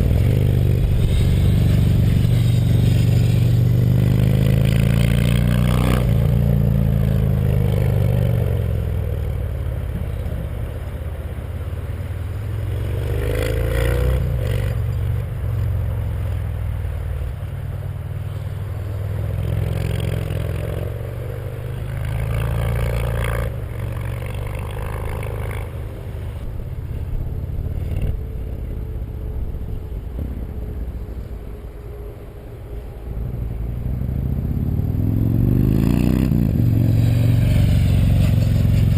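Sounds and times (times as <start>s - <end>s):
deep motorcycle engine revving: 0.0s - 9.2s.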